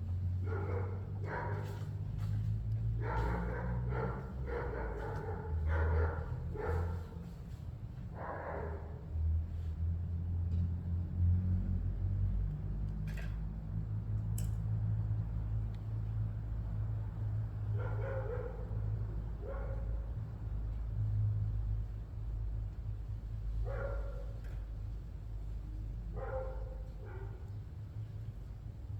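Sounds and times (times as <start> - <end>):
low steady rumble: 0.0 - 13.0
dog barking: 0.4 - 7.5, 8.1 - 9.1, 17.7 - 20.2, 23.6 - 24.6, 26.0 - 27.7.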